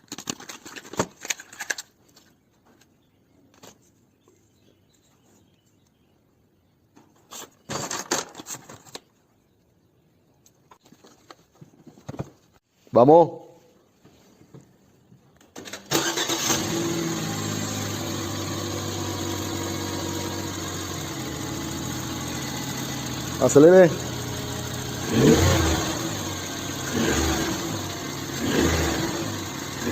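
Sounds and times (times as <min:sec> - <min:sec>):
small hard objects clattering: 0:00.0 - 0:02.9, 0:07.3 - 0:09.0
misfiring engine idling and revving: 0:16.0 - 0:29.9.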